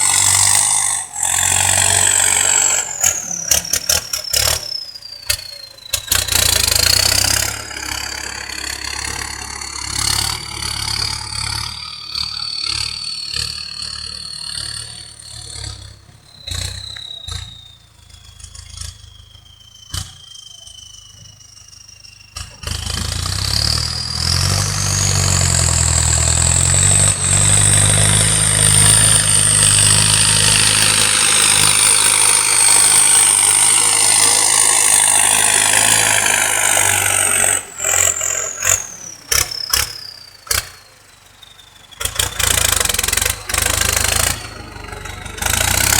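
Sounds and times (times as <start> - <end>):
tractor engine running: 0.0 - 45.9
turbo whistling: 0.0 - 45.9.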